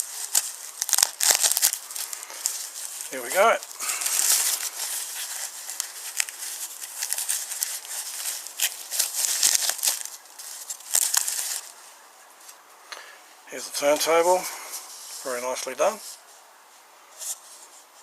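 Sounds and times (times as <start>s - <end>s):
wrapping crinkling and crackling: 0.0s - 12.6s.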